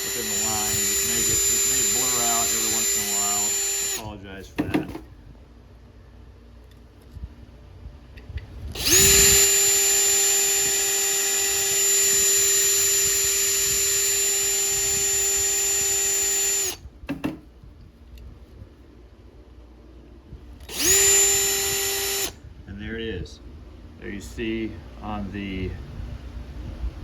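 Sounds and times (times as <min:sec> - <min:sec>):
electric drill whining: 0:00.0 - 0:04.2, 0:08.6 - 0:17.4, 0:20.5 - 0:22.4.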